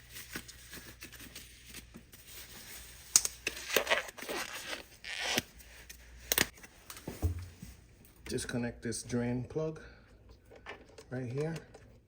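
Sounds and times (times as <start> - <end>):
gloves rustling and stretching: 0.0 - 8.0.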